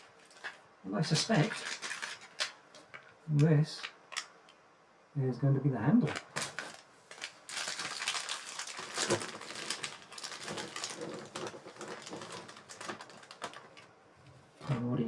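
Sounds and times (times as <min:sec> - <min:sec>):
packaging rustling and crinkling: 0:00.0 - 0:03.2, 0:06.0 - 0:13.9.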